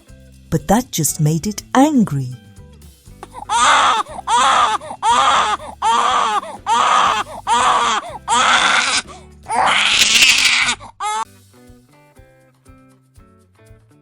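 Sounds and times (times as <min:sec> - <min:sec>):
baby crying: 0:03.2 - 0:11.2.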